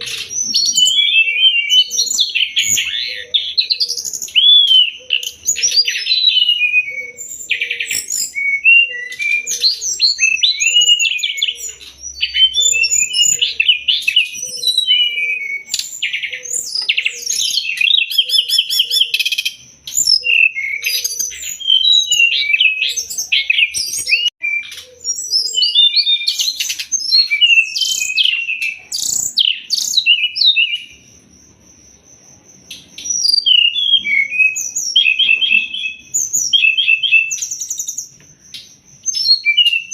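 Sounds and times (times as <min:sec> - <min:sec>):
bird singing: 0:00.0 - 0:39.9.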